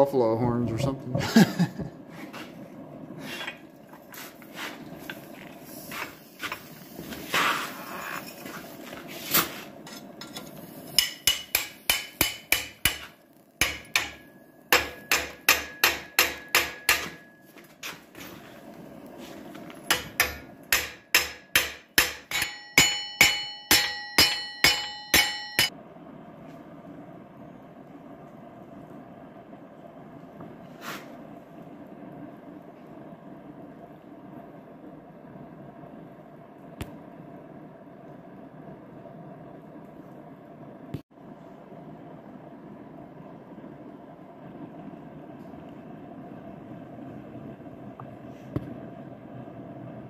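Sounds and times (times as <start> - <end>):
hammer striking steel on anvil: 11.0 - 17.4, 19.9 - 25.7
anvil ringing: 11.0 - 17.5, 19.9 - 25.7.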